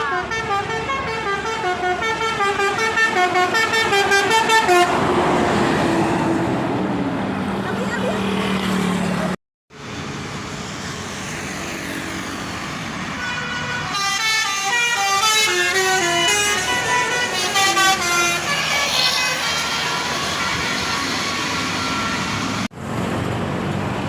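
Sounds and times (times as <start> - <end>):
bus musical horn tune: 0.0 - 5.1, 13.2 - 22.7
engine and road noise: 0.0 - 24.0.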